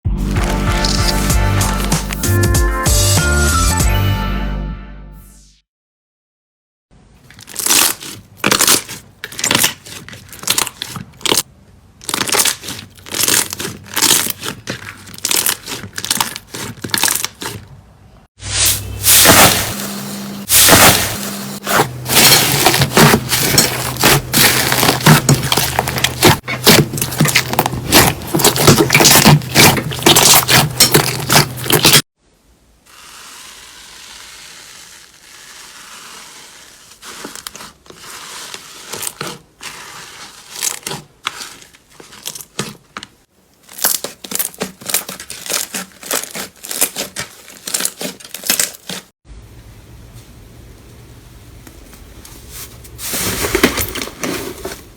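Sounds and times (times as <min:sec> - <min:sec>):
slime squishing and crackling: 0:00.3 - 0:02.2, 0:07.2 - 0:17.8, 0:20.5 - 0:32.1, 0:33.0 - 0:49.1.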